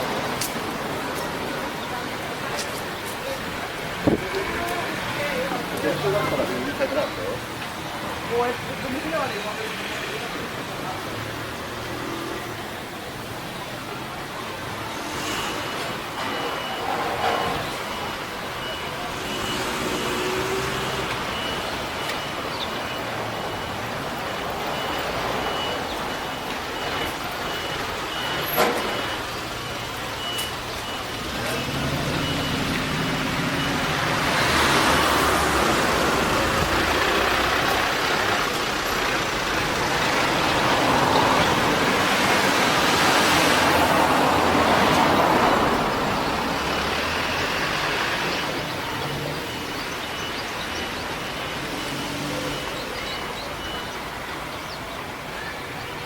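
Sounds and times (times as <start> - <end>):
passing traffic: 0.0 - 56.0
level crossing signal beeping: 14.4 - 56.0.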